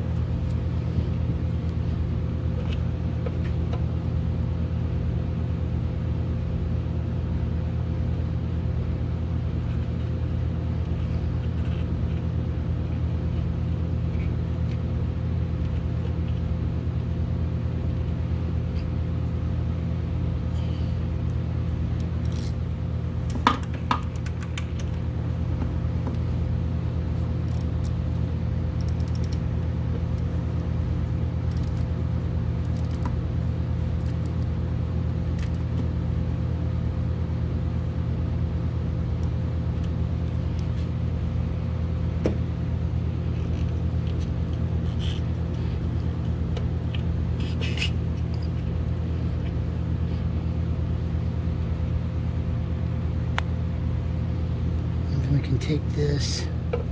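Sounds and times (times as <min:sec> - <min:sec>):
low mechanical hum: 0:00.0 - 0:56.9
small parts clicking and tapping: 0:22.0 - 0:22.6, 0:27.5 - 0:28.0, 0:28.8 - 0:29.4, 0:31.5 - 0:31.9, 0:32.6 - 0:33.2, 0:35.4 - 0:35.7.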